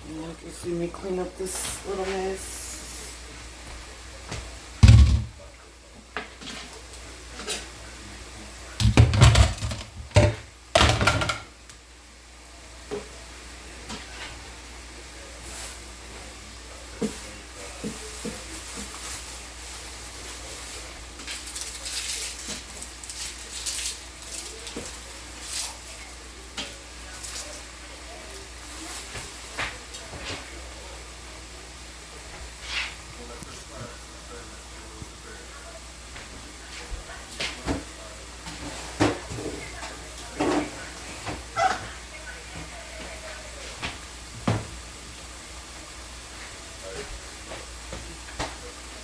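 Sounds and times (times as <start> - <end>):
dishes and pots clattering: 8.8 - 11.5
pan of vegetables sizzling: 10.0 - 34.1, 37.8 - 49.0.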